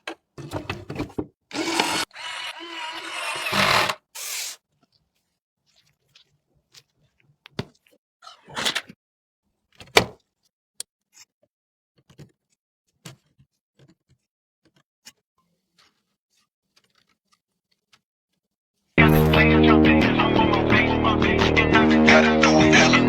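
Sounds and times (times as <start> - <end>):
music with guitar: 19.0 - 23.0.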